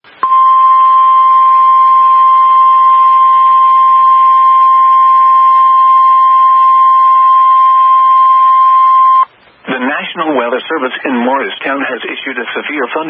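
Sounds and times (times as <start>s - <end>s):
steady warning alarm tone: 0.2s - 9.3s.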